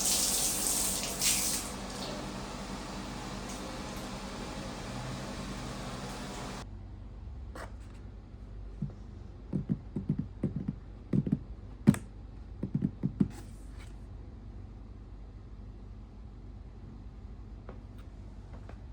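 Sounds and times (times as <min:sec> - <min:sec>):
steady hiss: 0:00.0 - 0:06.6.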